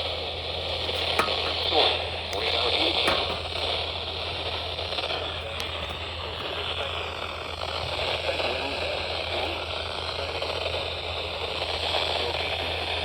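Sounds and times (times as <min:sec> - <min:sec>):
constant low hum: 0:00.0 - 0:13.0
radio static hiss: 0:00.0 - 0:13.0.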